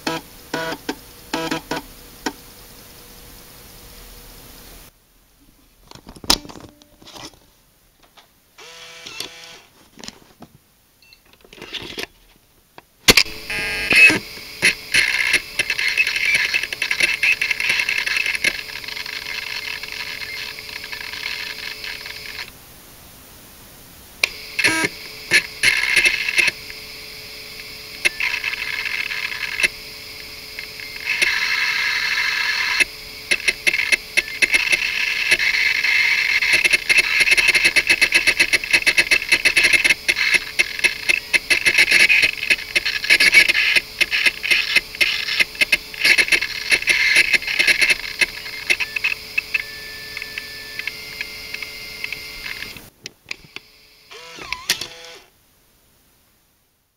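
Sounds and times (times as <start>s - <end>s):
disk drive motor hum: 13.2s - 22.5s, 24.2s - 55.3s.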